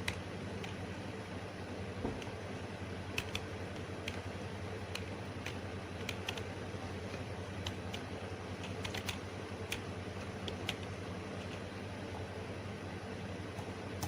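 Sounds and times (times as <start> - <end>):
steady low hum: 0.0 - 14.0
keyboard keys clicking: 3.1 - 11.7.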